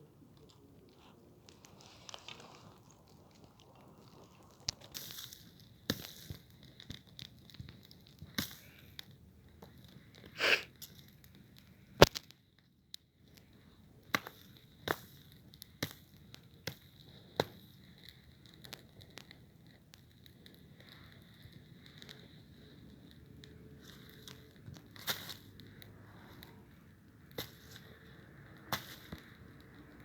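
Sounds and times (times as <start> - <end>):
campfire crackling: 0.0 - 30.0
burning wood popping and snapping: 0.2 - 30.0
short hiss: 10.4 - 10.7.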